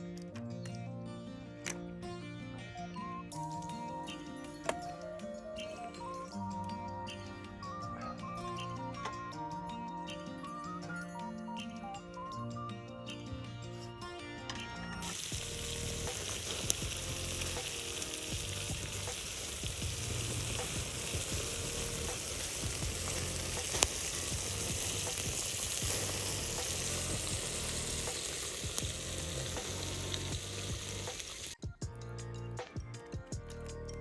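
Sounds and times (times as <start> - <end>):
seafood sizzling: 15.0 - 31.6.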